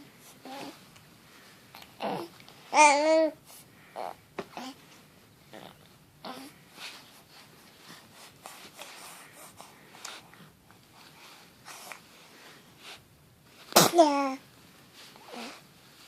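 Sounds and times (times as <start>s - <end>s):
faint sniffs and snuffles: 6.3s - 13.1s
loud sneeze: 13.7s - 14.2s.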